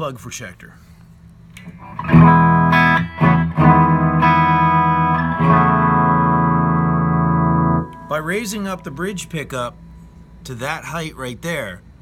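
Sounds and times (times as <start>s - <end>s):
clean electric guitar chords strummed: 1.6s - 10.4s.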